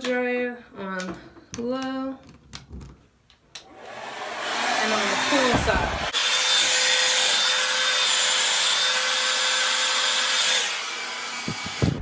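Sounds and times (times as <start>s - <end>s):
hair dryer blowing: 3.6s - 12.0s.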